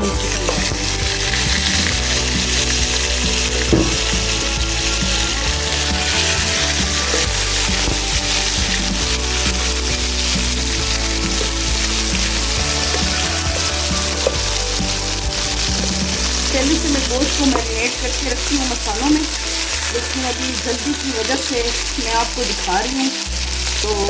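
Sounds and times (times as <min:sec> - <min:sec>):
food sizzling in oil: 0:00.0 - 0:24.0.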